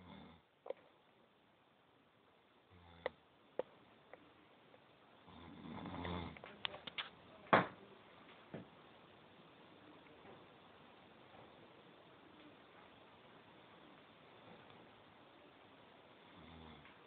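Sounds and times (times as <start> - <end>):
person snoring: 16.3 - 16.9.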